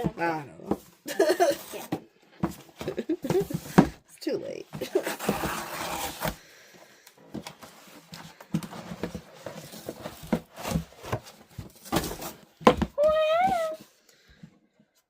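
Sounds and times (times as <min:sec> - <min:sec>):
packaging rustling and crinkling: 0:07.3 - 0:12.6.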